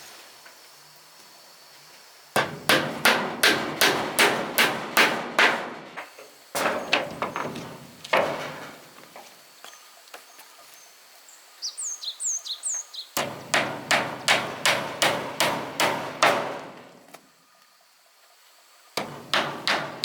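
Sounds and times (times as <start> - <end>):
hammer blows on wood: 2.4 - 7.0, 13.2 - 16.8, 19.0 - 20.0.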